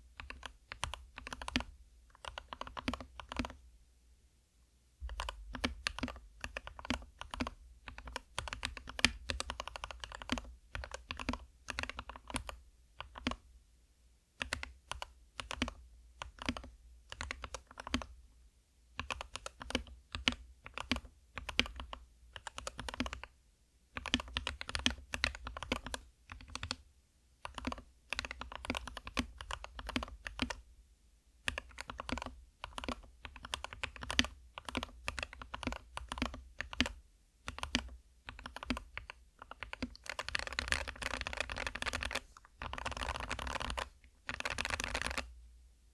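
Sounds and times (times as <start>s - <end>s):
fast typing on mechanical keyboard: 0.2s - 3.6s, 5.1s - 13.4s, 14.4s - 18.1s, 19.0s - 23.3s, 24.0s - 26.8s, 27.4s - 30.6s, 31.5s - 45.3s.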